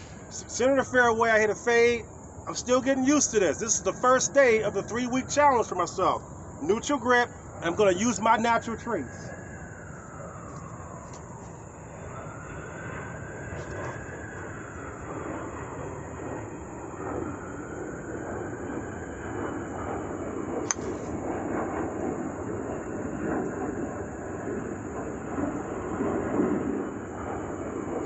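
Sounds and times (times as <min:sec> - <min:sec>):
faint rising and falling whine: 0:00.0 - 0:28.0.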